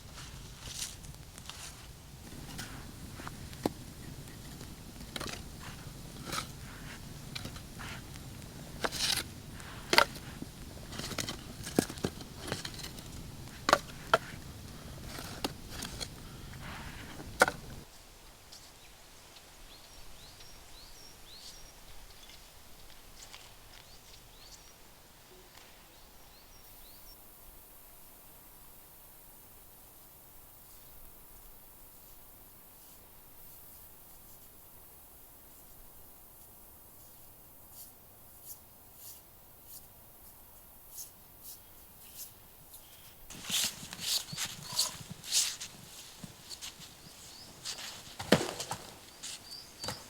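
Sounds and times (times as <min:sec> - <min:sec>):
crunches and sharp snaps: 0:43.3 - 0:50.0.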